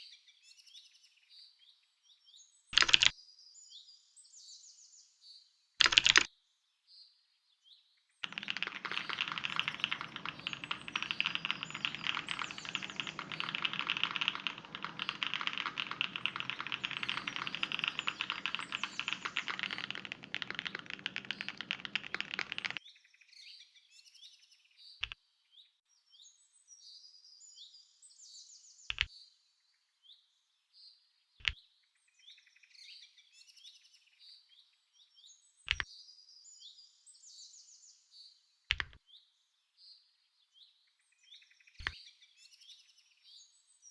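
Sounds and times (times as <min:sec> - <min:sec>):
fast typing on mechanical keyboard: 0:08.2 - 0:22.8
sharp clicks: 0:08.2 - 0:22.8
small birds chirping: 0:08.2 - 0:22.8.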